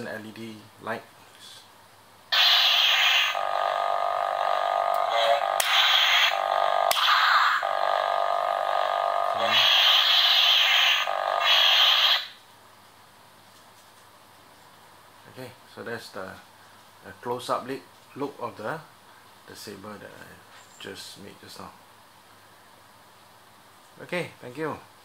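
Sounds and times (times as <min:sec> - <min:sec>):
lightsaber electronic hum: 0:02.3 - 0:12.4.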